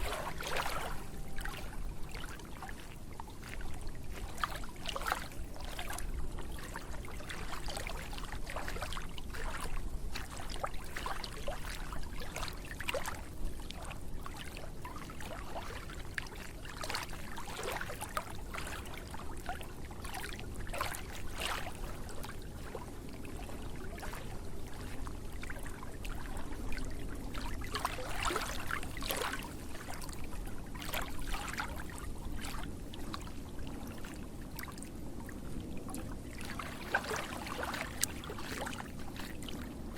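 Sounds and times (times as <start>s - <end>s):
flowing water rushing: 0.0s - 2.5s
water splashing: 0.0s - 6.0s, 27.3s - 30.2s, 36.3s - 39.7s.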